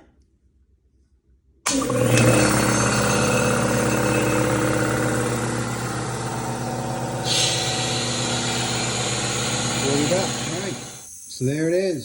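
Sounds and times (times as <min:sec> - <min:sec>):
air compressor running: 0:01.7 - 0:11.3
air hissing: 0:03.0 - 0:11.7.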